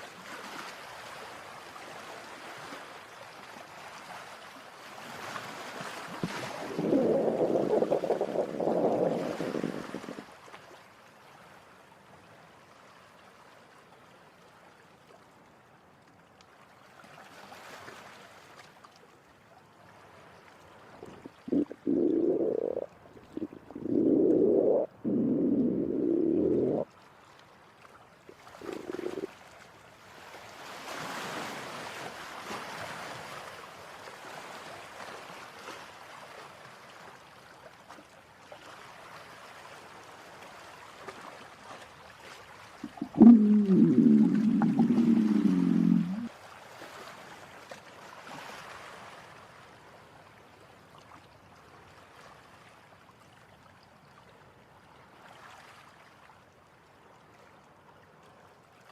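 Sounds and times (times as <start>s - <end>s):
cartoon stomach growls: 6.2s - 10.2s, 21.0s - 26.9s, 28.6s - 29.3s, 42.8s - 46.3s.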